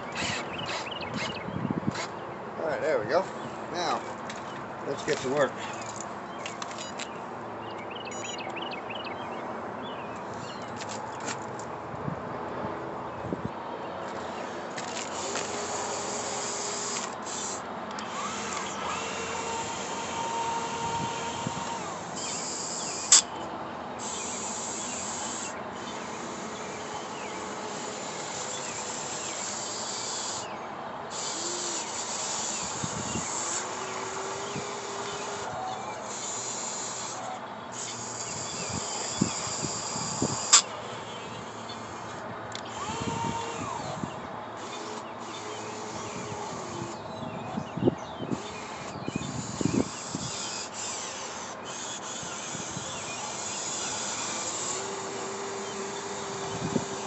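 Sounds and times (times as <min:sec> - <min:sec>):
small electric motor whining: 0:00.0 - 0:02.1, 0:14.1 - 0:57.0
sharp clicks: 0:17.9 - 0:19.1.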